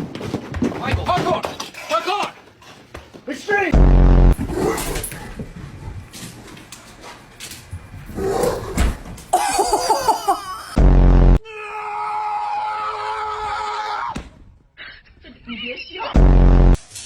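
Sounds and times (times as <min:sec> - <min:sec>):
people laughing: 0:09.3 - 0:10.8.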